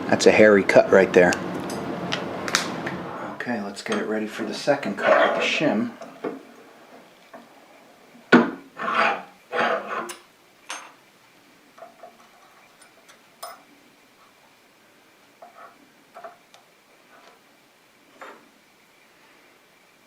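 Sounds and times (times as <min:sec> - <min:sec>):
metal scraping: 0:04.3 - 0:06.2, 0:08.7 - 0:10.2.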